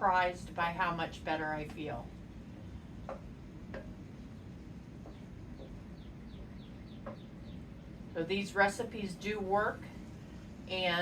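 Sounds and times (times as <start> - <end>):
faint bird chirps: 4.2 - 8.0.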